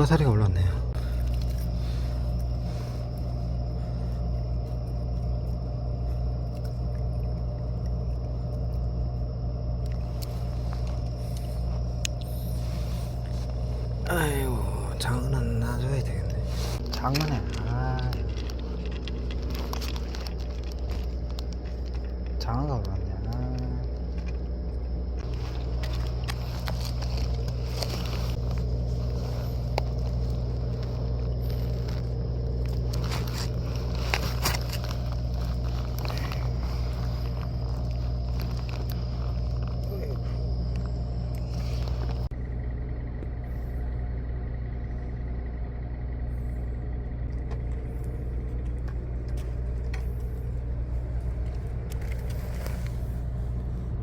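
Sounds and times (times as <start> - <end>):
low engine hum: 0.0 - 54.0
handling clicks and scrapes: 16.4 - 22.4, 25.2 - 42.3, 47.4 - 54.0.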